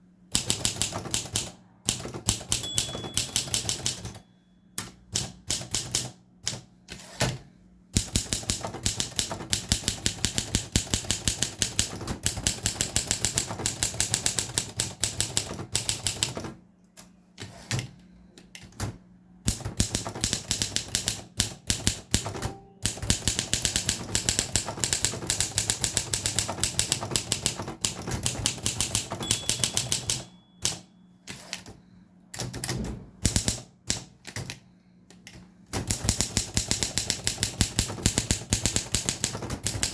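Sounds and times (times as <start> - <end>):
typewriter key strikes: 0.4 - 4.2, 19.5 - 31.7, 32.4 - 34.6, 35.8 - 39.9.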